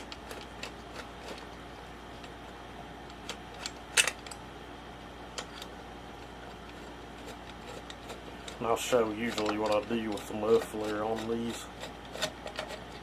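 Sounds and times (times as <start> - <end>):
metal parts clicking and knocking: 3.1 - 4.4, 6.5 - 13.0.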